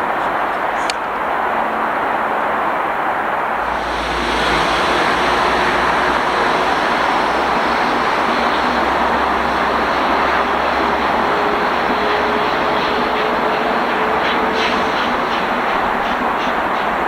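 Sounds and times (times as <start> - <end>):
train passing rushing: 0.0 - 17.0
train low rumble: 3.4 - 17.0.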